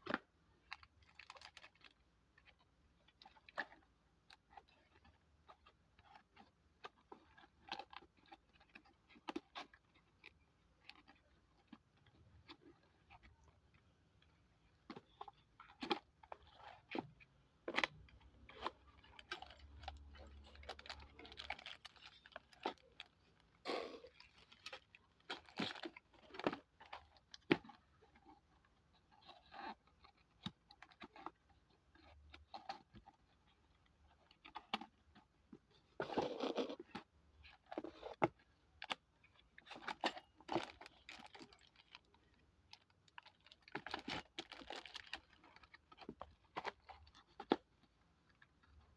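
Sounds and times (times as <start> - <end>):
wrapping crunching and tearing: 0.6 - 2.6, 15.0 - 28.3, 39.6 - 47.6
packaging rustling: 17.7 - 23.3.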